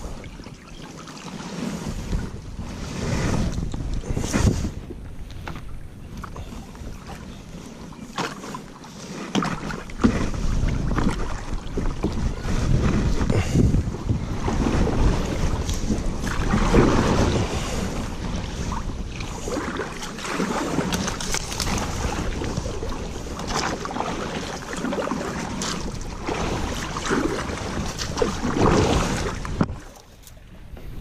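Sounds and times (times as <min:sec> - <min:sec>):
paddle splashes: 0:00.0 - 0:31.0
wind on microphone: 0:00.0 - 0:31.0
paddle knocking against hull: 0:03.5 - 0:07.2, 0:09.2 - 0:17.4, 0:18.6 - 0:30.0.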